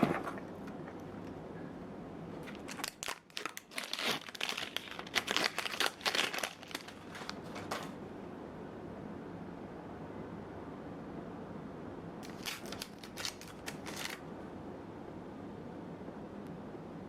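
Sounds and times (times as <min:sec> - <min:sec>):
packaging wrap crinkling: 0:02.4 - 0:08.0, 0:12.2 - 0:14.2.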